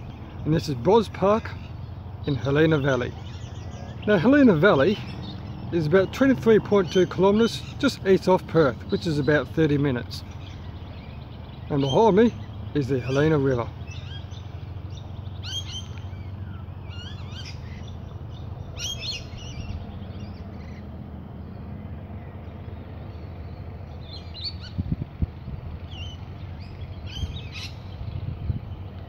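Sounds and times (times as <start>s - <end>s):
birds chirping and warbling: 0.0s - 29.0s
steady low rumble: 13.4s - 29.0s.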